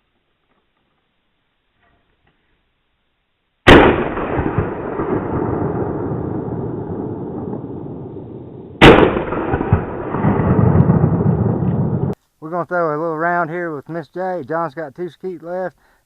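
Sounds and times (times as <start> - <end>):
shotgun blasts: 3.7 - 12.2.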